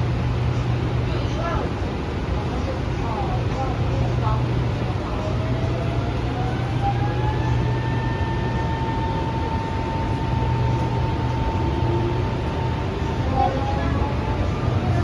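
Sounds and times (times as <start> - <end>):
metro train running: 0.0 - 15.0
train motor whine: 5.6 - 13.1.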